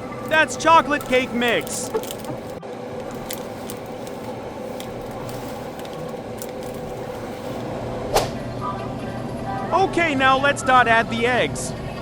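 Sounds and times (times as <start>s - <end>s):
packaging handling noises: 0.0s - 8.2s.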